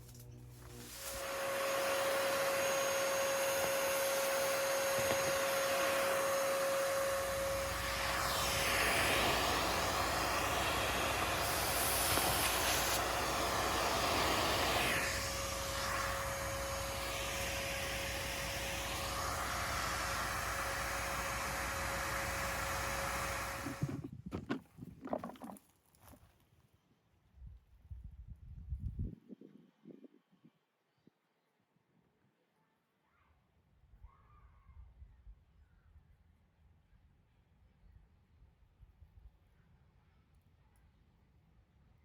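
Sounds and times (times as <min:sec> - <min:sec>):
vacuum cleaner whining: 0:00.0 - 0:24.1.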